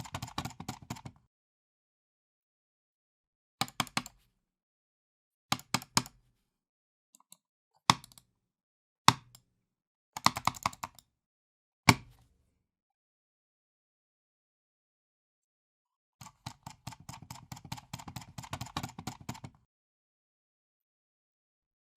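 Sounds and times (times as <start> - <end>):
computer mouse clicking: 0.0 - 1.1, 3.6 - 4.2, 16.2 - 19.6.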